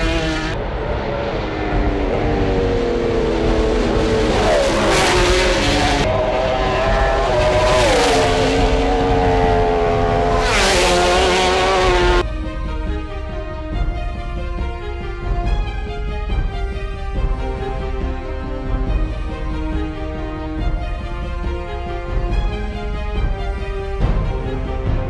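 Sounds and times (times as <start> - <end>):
racing motorcycles revving past: 0.0 - 12.2
music: 0.0 - 25.0.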